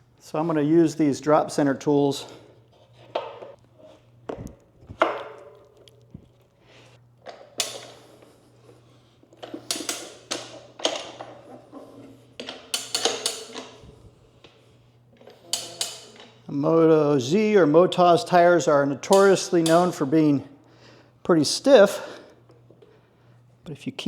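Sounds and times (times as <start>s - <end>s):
metal clanks and scrapes: 2.2s - 4.0s, 15.2s - 16.4s.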